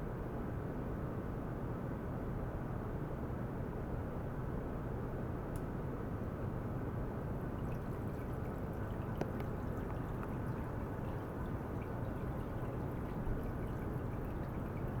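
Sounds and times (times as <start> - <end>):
faint drip-like ticks: 7.3 - 15.0
water running: 7.4 - 15.0.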